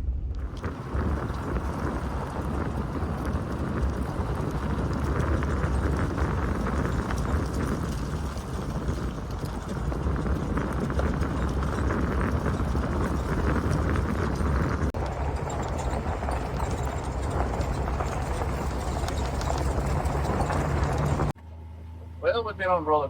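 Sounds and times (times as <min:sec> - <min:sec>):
vehicle engine rumble: 0:00.0 - 0:23.0
tyres crunching on gravel: 0:00.3 - 0:21.4.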